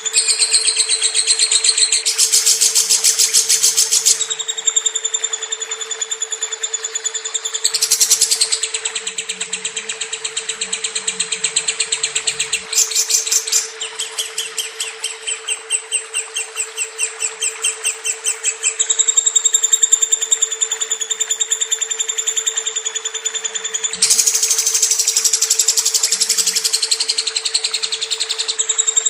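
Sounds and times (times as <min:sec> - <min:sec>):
bird chattering high chirps: 0:00.0 - 0:29.0.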